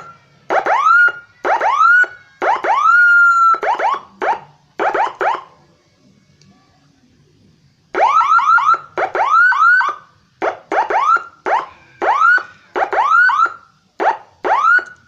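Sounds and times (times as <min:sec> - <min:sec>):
siren rising whoops: 0:00.0 - 0:05.4, 0:10.8 - 0:13.6.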